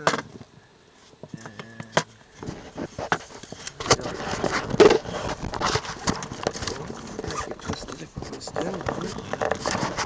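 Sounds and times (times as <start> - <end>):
scraping and crackling of boat parts: 2.4 - 10.0.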